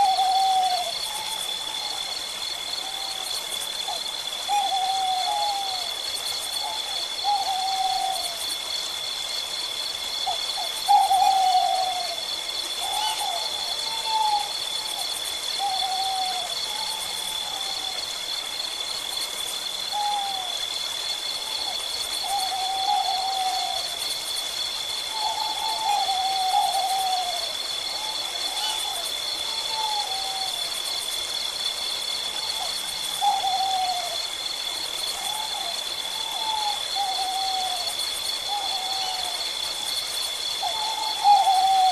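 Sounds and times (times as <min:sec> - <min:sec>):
owl hooting: 0:00.0 - 0:02.1, 0:03.8 - 0:05.9, 0:06.6 - 0:08.4, 0:10.2 - 0:12.2, 0:12.8 - 0:14.5, 0:15.6 - 0:18.0, 0:19.9 - 0:20.6, 0:21.6 - 0:24.0, 0:25.1 - 0:30.6, 0:32.5 - 0:34.2, 0:35.2 - 0:37.9, 0:38.5 - 0:39.4, 0:40.6 - 0:41.9.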